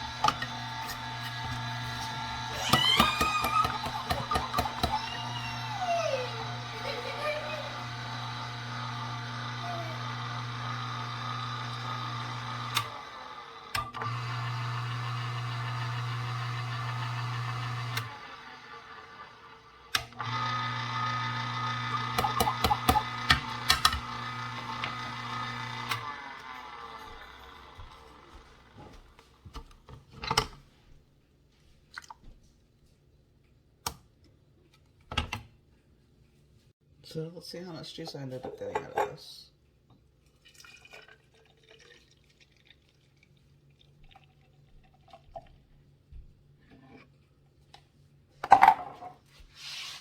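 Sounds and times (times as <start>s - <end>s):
juicer motor humming: 0.0s - 29.2s.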